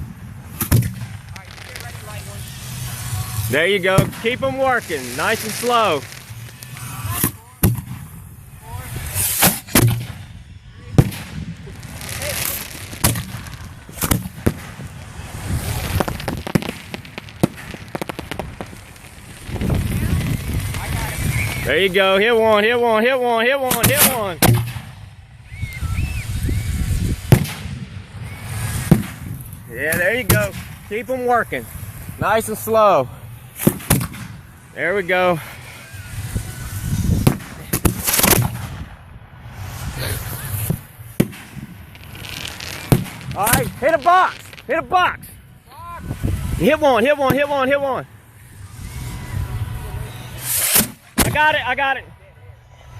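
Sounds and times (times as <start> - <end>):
firework bangs: 0.0 - 52.0
small firework pops: 0.5 - 2.6, 4.0 - 8.1, 11.0 - 21.7, 23.7 - 25.0, 27.2 - 31.0, 33.6 - 34.4, 36.2 - 38.9, 40.4 - 44.7, 50.4 - 51.4
low rumble: 9.8 - 22.8.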